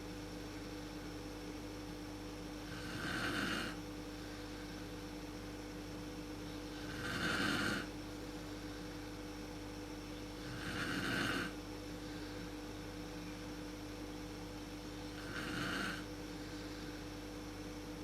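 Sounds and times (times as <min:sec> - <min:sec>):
steady hum: 0:00.0 - 0:18.0
woman snoring: 0:02.6 - 0:03.8, 0:06.7 - 0:07.9, 0:10.4 - 0:11.6, 0:15.1 - 0:16.1.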